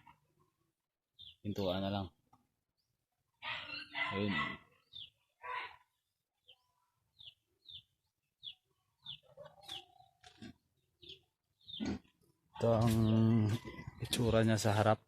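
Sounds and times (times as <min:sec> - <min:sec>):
high bird chirps: 0:03.5 - 0:05.8, 0:11.0 - 0:12.0.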